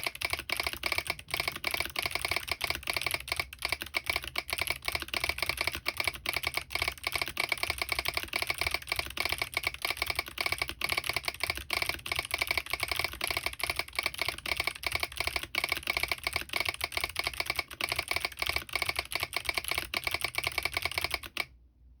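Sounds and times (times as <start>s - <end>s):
fast mechanical keyboard typing: 0.0s - 21.5s.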